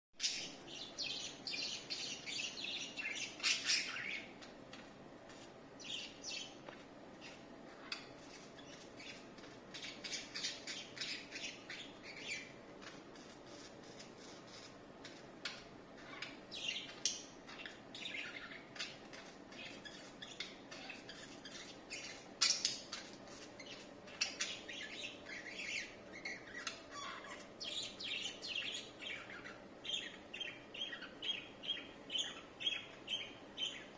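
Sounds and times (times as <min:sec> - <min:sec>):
budgerigars chirping: 0:00.2 - 0:04.4, 0:07.2 - 0:12.6, 0:15.4 - 0:33.9.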